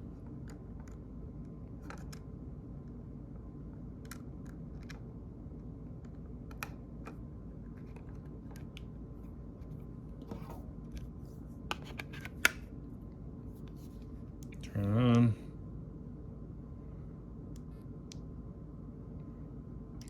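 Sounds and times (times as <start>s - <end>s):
light clicks handling phone parts: 11.7s - 12.6s.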